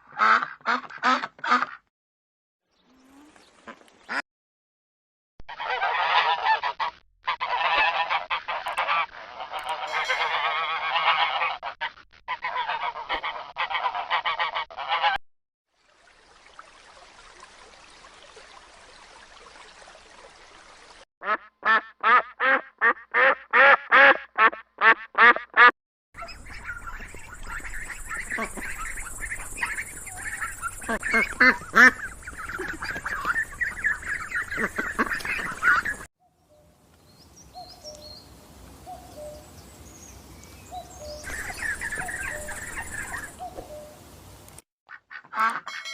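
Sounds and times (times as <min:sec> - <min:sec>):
geese honking: 0:05.5 - 0:15.2, 0:21.2 - 0:36.1, 0:41.2 - 0:43.6, 0:44.9 - 0:45.9.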